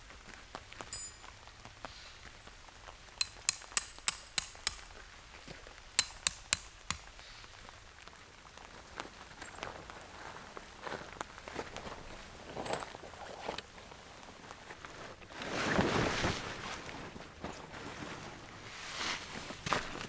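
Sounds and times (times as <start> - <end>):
soft rain-like hiss: 0.0 - 3.2, 4.7 - 20.0
hammer striking metal: 0.9 - 1.3, 3.2 - 4.9, 6.0 - 7.1.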